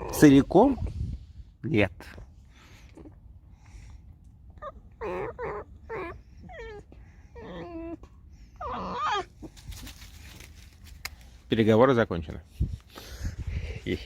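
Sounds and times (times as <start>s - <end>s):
fox whining and squeaking: 4.5s - 9.9s.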